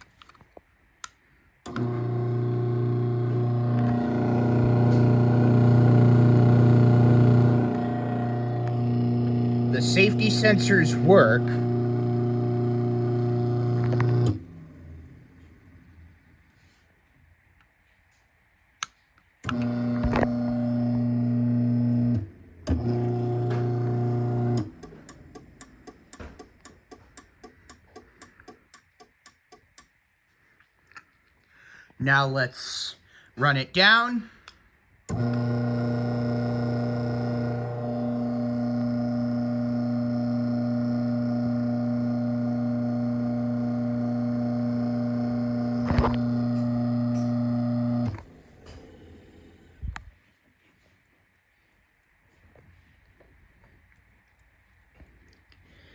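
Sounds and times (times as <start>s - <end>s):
garage door opener motor humming: 1.7s - 16.1s, 19.4s - 26.5s, 35.1s - 50.0s.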